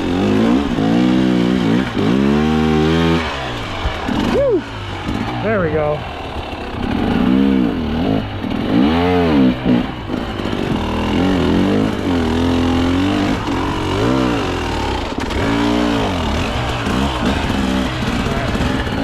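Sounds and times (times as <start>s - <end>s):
dirt bike engine revving: 0.0s - 19.0s.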